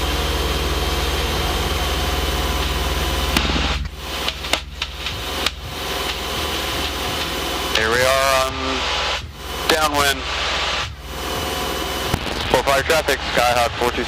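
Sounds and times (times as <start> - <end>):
propeller plane engine droning: 0.0 - 14.0.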